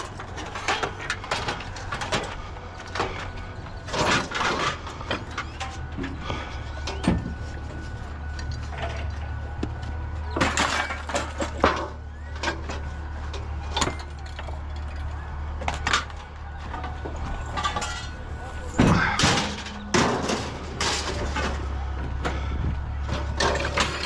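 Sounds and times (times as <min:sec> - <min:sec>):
scrap pieces clattering: 0:10.3 - 0:12.6, 0:13.7 - 0:21.8, 0:23.2 - 0:24.0.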